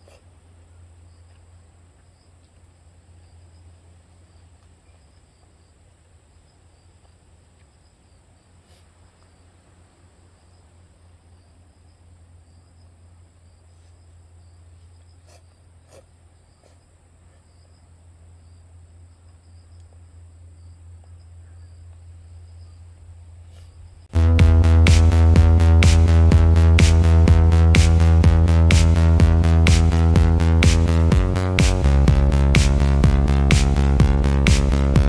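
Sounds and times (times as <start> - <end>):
high constant insect trill: 0.0 - 24.1
low steady hum: 0.0 - 35.0.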